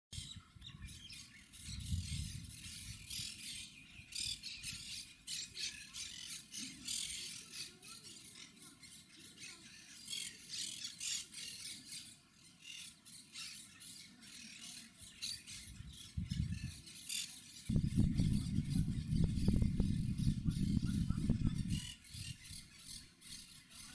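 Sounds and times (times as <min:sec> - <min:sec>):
loud low rumbling: 0:17.7 - 0:21.8.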